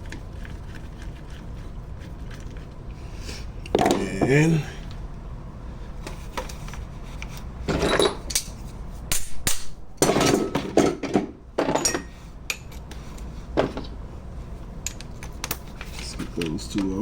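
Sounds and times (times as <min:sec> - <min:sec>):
metal tools clanking: 0:07.7 - 0:08.6, 0:10.0 - 0:13.9.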